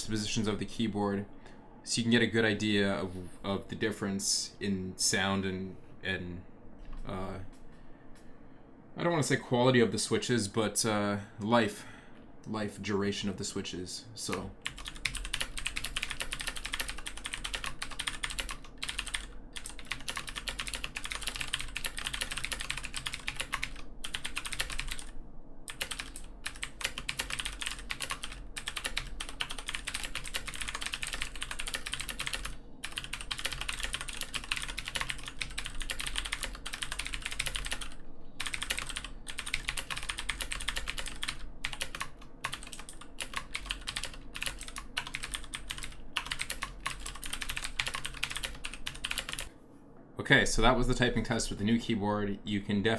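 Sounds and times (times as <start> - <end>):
clicky mechanical keyboard typing: 14.3 - 25.1, 25.7 - 49.5.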